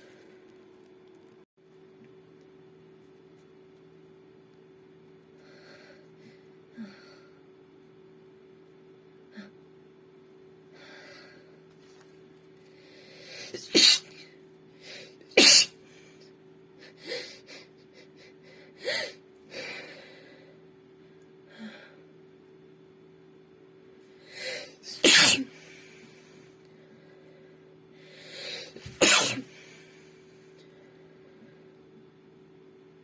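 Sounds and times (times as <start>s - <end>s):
woman sneezing: 13.5s - 14.2s, 15.4s - 15.8s, 24.4s - 25.6s, 28.6s - 29.6s.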